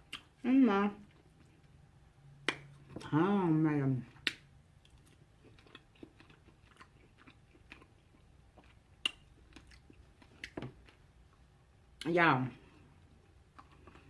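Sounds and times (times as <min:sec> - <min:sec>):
chewing food: 0:04.1 - 0:11.5, 0:13.0 - 0:14.0.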